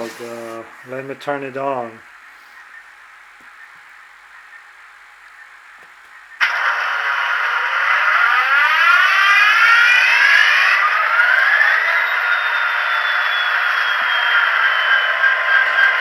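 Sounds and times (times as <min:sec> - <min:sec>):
model locomotive diesel engine sound: 0:00.0 - 0:02.2, 0:06.4 - 0:16.0.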